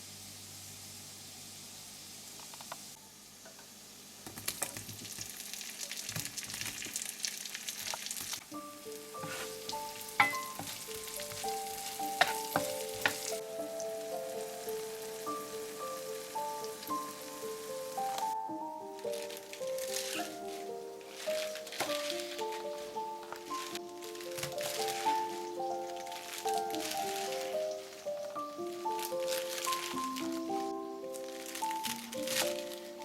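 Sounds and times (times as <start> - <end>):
food sizzling in a frying pan: 0.0 - 33.0
soft background music: 8.4 - 33.0.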